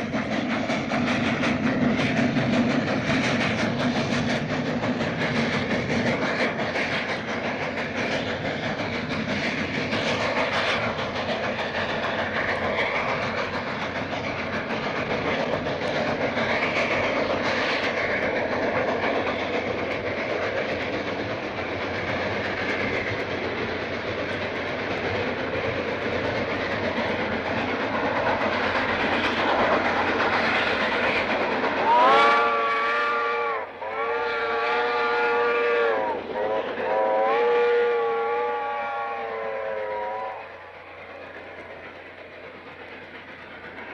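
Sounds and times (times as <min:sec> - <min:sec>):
locomotive rumbling clatter: 0:00.0 - 0:39.0, 0:39.9 - 0:43.9
locomotive chord whistle: 0:31.8 - 0:40.8.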